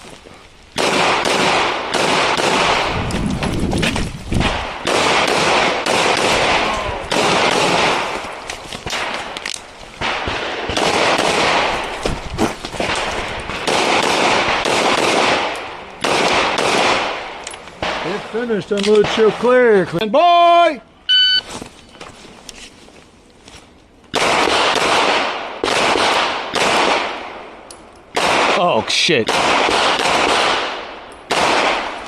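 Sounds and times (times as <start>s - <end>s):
rapid pistol shots echoing: 0.8s - 3.0s, 4.4s - 8.3s, 10.0s - 11.9s, 12.8s - 18.2s, 24.1s - 27.4s, 28.1s - 32.0s.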